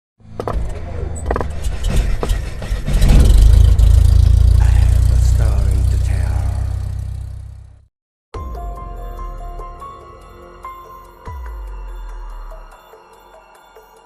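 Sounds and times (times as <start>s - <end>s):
engine rumbling: 0.2s - 7.9s
person speaking: 4.6s - 6.9s.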